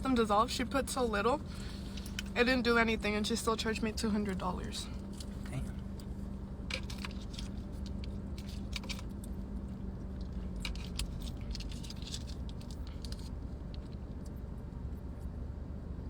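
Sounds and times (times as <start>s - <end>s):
low hum: 0.0s - 16.0s
chewing food: 5.0s - 14.4s
food wrappers handled: 6.7s - 9.3s.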